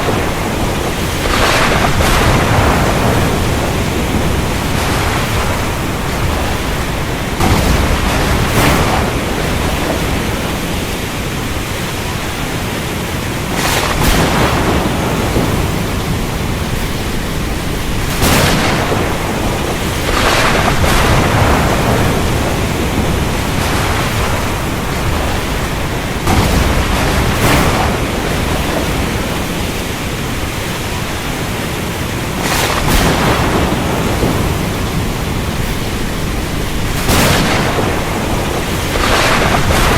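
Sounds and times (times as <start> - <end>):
steady rain: 0.0 - 39.9
thunder cracking and rumbling: 0.0 - 39.9.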